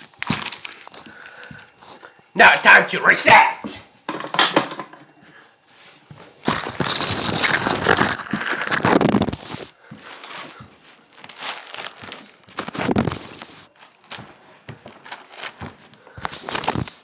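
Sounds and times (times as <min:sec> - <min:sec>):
loud crinkling and rustling: 0:00.0 - 0:02.0, 0:06.1 - 0:17.0.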